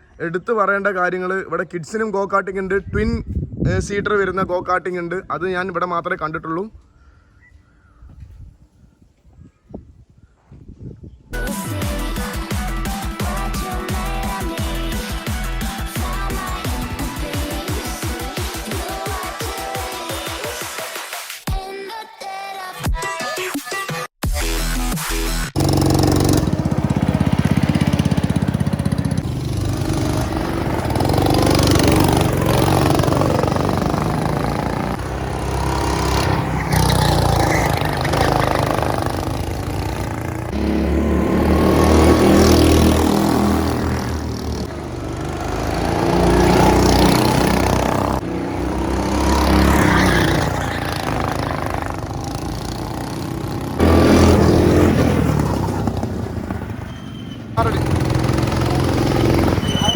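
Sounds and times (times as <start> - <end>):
go-kart engine running hard: 25.6 - 59.9.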